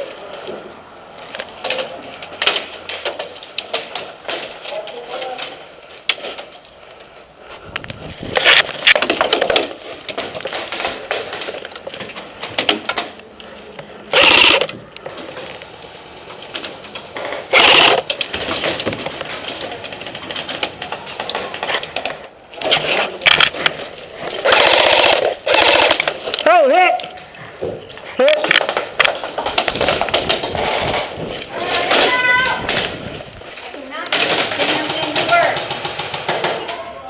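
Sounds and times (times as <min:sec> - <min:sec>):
airsoft guns firing bursts: 0:14.1 - 0:14.7, 0:17.4 - 0:18.5, 0:24.4 - 0:26.3, 0:34.1 - 0:36.7.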